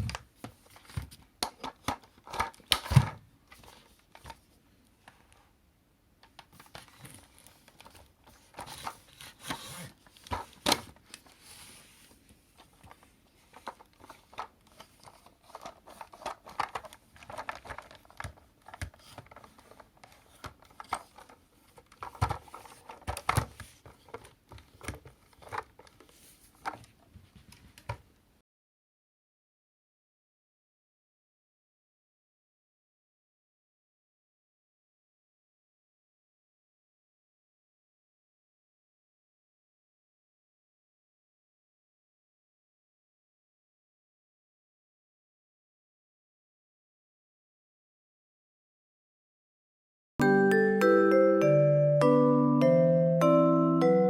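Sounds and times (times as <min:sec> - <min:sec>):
objects being handled: 0:06.2 - 0:28.1.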